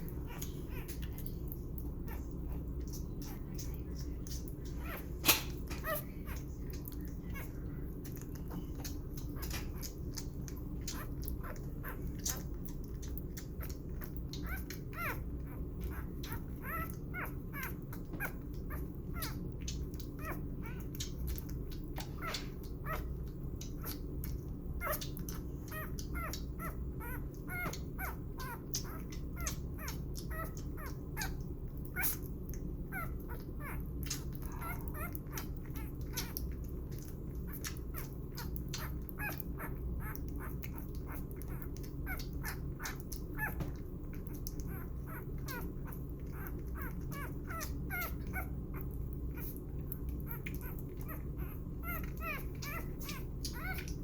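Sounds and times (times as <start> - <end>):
steady low hum: 0.0 - 54.0
wet suckling clicks: 0.0 - 54.0
puppy squeaks: 0.1 - 1.3, 2.0 - 54.0.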